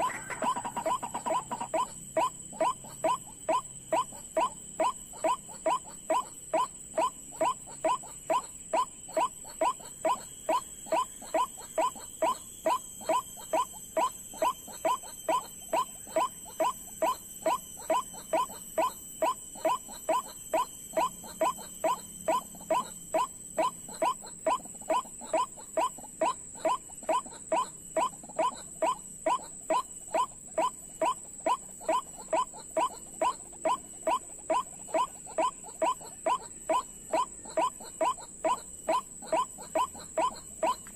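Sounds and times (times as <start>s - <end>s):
waterhen calling: 0.0s - 1.7s.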